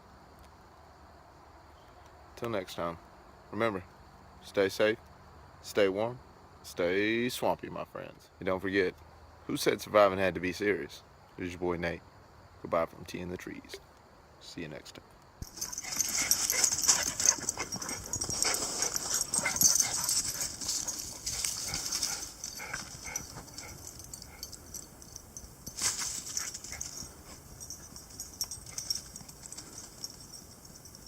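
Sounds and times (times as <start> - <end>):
insects hissing: 13.6 - 31.0
dog whimpering and yipping: 15.5 - 31.0.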